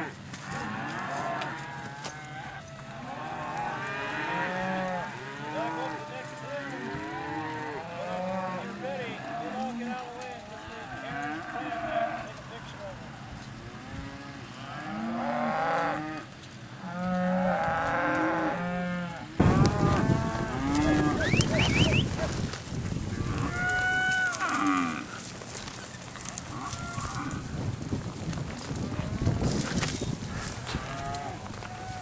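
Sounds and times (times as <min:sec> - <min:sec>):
cattle mooing: 0:00.0 - 0:12.7, 0:13.7 - 0:16.2, 0:16.8 - 0:22.4, 0:23.2 - 0:25.3, 0:26.5 - 0:27.5, 0:30.4 - 0:32.0
rough rustling noise: 0:19.3 - 0:32.0.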